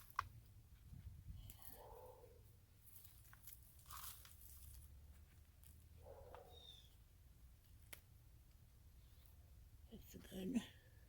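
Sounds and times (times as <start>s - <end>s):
hands digging through soil: 0.0s - 6.5s.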